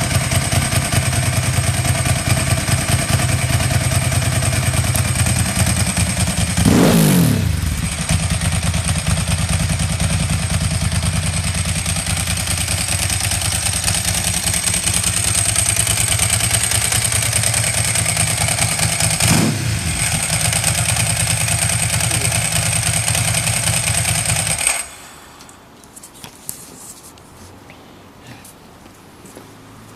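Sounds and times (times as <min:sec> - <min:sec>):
motorcycle engine idling: 0:00.0 - 0:24.8
engine revs blipped: 0:06.2 - 0:09.3, 0:17.7 - 0:21.0.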